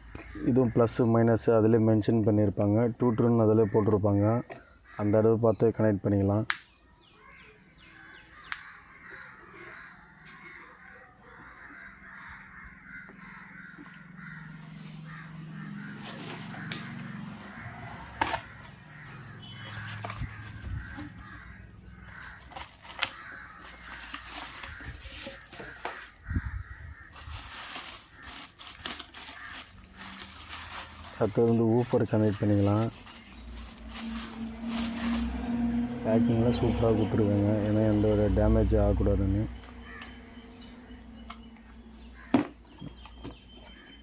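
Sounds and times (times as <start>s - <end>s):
birds calling: 0.0s - 44.0s
clicks and knocks of handled parts: 22.2s - 26.1s.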